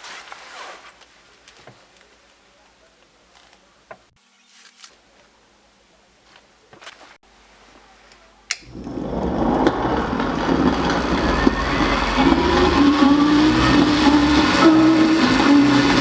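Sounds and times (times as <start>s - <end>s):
small electric motor humming: 8.6s - 16.0s.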